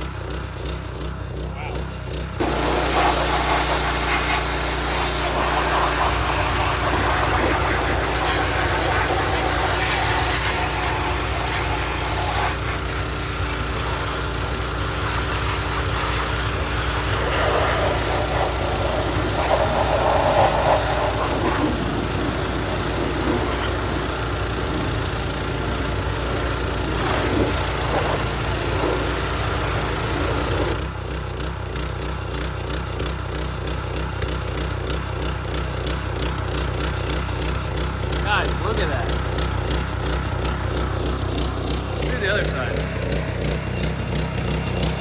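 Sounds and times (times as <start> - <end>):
pressure washer engine droning: 0.0 - 45.0
high-pressure spray hissing: 2.4 - 30.8.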